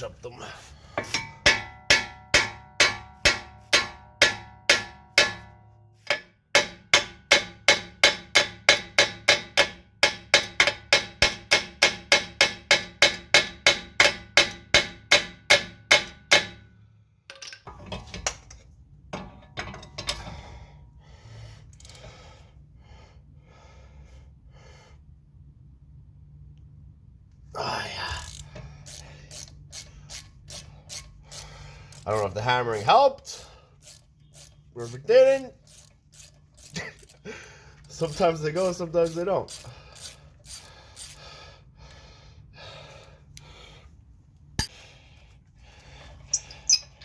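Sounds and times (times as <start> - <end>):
steel hammer striking metal: 1.0 - 16.7
metallic clinks and rattles: 33.2 - 41.2.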